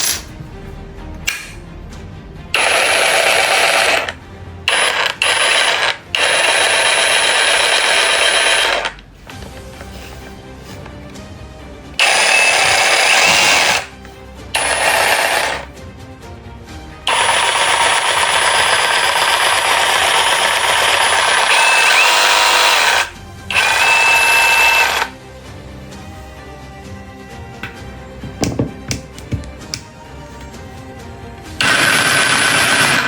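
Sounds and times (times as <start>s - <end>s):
cordless jigsaw cutting wood: 2.6s - 9.0s, 12.0s - 13.9s, 14.6s - 15.6s, 17.1s - 25.1s, 31.6s - 33.0s.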